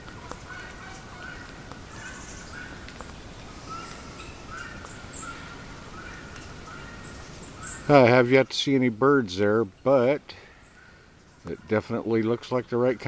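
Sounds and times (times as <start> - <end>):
birds short repeated calls: 0.0 - 13.0
faint outdoor background noise: 0.0 - 13.0
higher bird chirps: 0.4 - 8.5.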